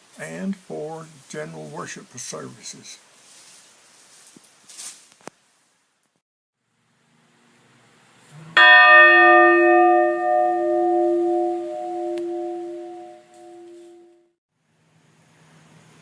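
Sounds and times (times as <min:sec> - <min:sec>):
metal bell ringing: 0:08.6 - 0:14.1.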